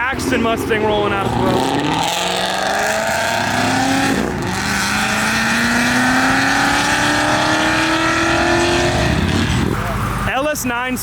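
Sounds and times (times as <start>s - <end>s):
car engine accelerating hard: 0.0s - 10.3s.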